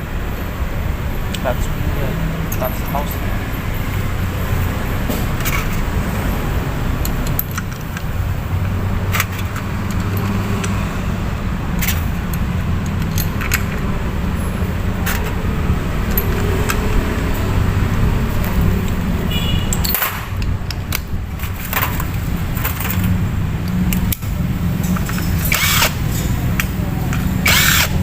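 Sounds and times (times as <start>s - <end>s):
metallic clinks of tools: 2.5s - 3.3s.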